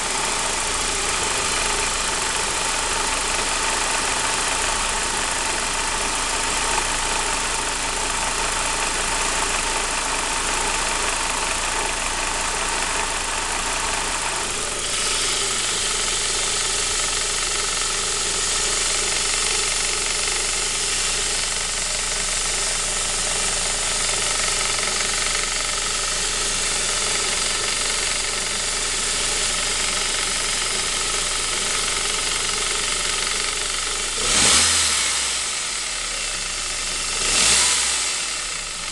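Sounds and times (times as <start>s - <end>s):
car engine running cold: 0.0s - 38.9s.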